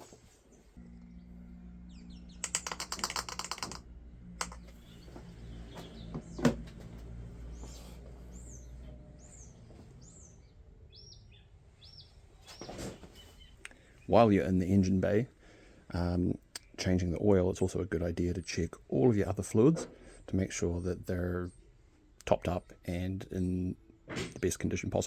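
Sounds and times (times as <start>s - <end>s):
birds chirping: 0.0s - 25.0s
low steady hum: 0.0s - 25.0s
rapid clicks: 2.4s - 5.0s.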